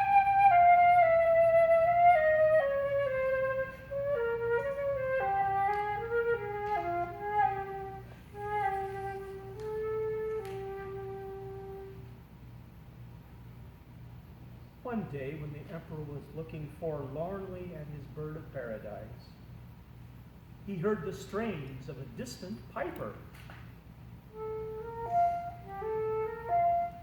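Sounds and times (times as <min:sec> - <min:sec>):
solo flute melody: 0:00.0 - 0:12.2, 0:24.3 - 0:27.0.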